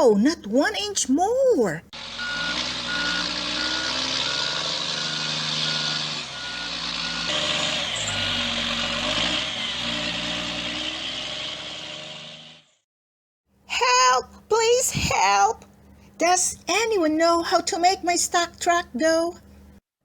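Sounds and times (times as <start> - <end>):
reversing alarm beeping: 2.0 - 9.0
truck engine revving: 2.0 - 12.8.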